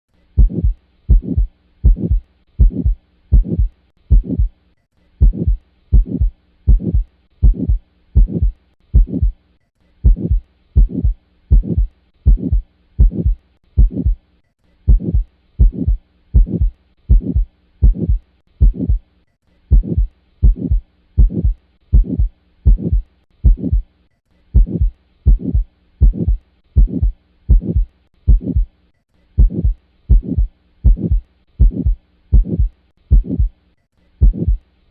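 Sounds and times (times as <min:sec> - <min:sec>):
heartbeat with murmur: 0:00.4 - 0:04.6, 0:05.2 - 0:09.4, 0:10.0 - 0:14.2, 0:14.9 - 0:19.1, 0:19.7 - 0:23.9, 0:24.5 - 0:28.8, 0:29.4 - 0:33.6, 0:34.2 - 0:34.6.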